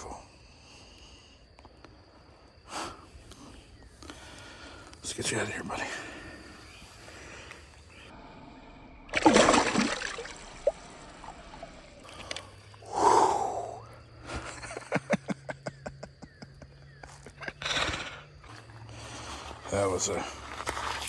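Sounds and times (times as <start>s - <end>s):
water splash: 9.1s - 12.4s
man breathing out: 12.0s - 14.5s.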